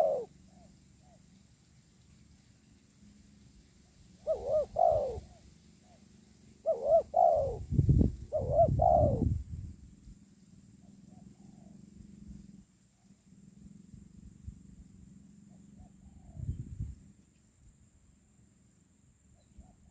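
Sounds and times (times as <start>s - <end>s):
dove cooing: 0.0s - 1.2s, 4.2s - 6.0s, 6.6s - 9.4s.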